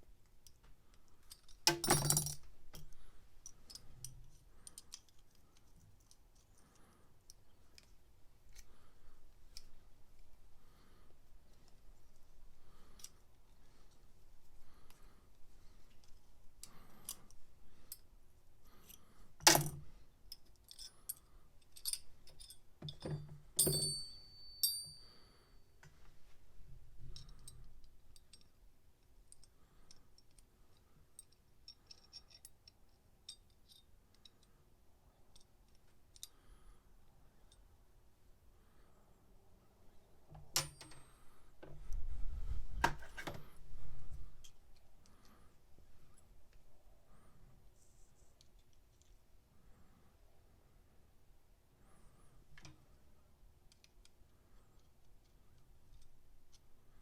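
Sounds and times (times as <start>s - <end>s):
metal tool parts clicking: 1.2s - 6.6s, 31.2s - 34.4s
metal clinks with ringing: 1.7s - 2.4s, 20.7s - 25.6s.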